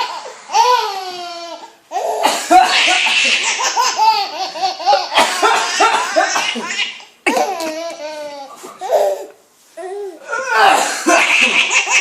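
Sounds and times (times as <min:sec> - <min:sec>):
baby laughing: 0:00.0 - 0:09.4, 0:11.1 - 0:12.0
man coughing: 0:02.2 - 0:03.4, 0:10.5 - 0:11.6.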